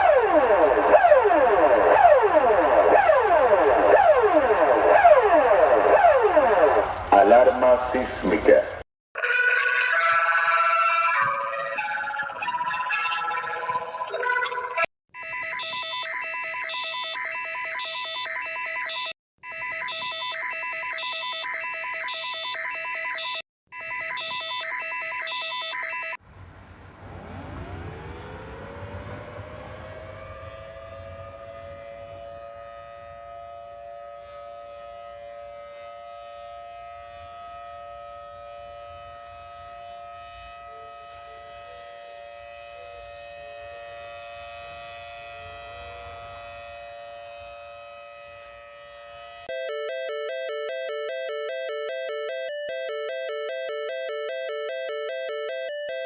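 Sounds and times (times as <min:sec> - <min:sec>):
emergency siren: 0:00.0 - 0:07.9, 0:09.2 - 0:14.2, 0:15.2 - 0:26.2, 0:26.9 - 0:56.0
alarm of alternating tones: 0:15.2 - 0:26.2, 0:49.5 - 0:56.0
electronic alert beeps: 0:49.5 - 0:56.0.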